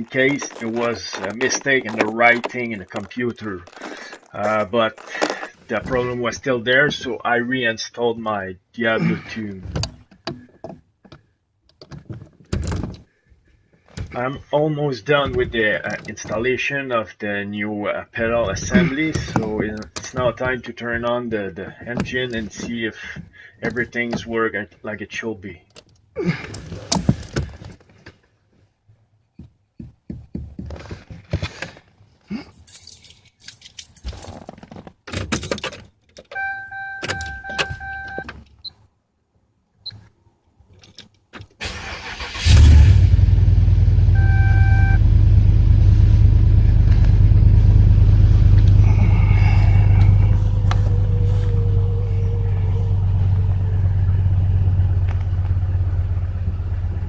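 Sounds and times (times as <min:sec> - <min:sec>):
car engine starting and idling: 0:41.6 - 0:57.0.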